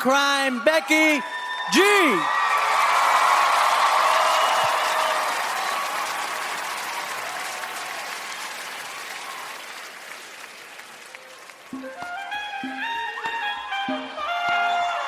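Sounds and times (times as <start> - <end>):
audience applauding and cheering: 0.0 - 15.0
music: 11.7 - 15.0.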